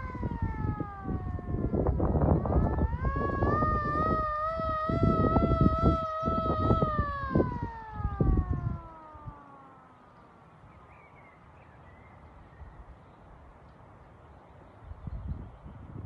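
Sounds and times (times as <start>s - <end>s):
hand-cranked siren wailing: 0.0s - 10.1s.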